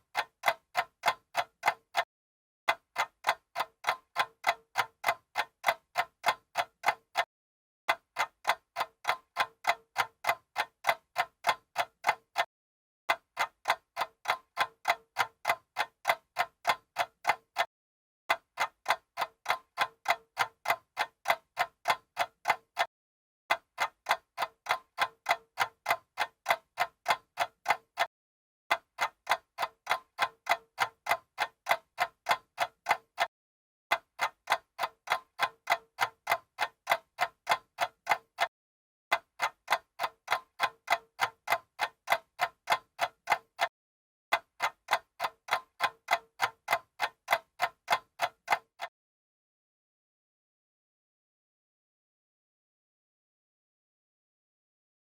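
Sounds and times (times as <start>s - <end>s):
mechanical stopwatch ticking: 0.0s - 2.1s, 2.7s - 7.3s, 7.9s - 12.5s, 13.1s - 17.7s, 18.3s - 22.9s, 23.5s - 28.1s, 28.7s - 33.3s, 33.9s - 38.5s, 39.1s - 43.7s, 44.3s - 48.9s.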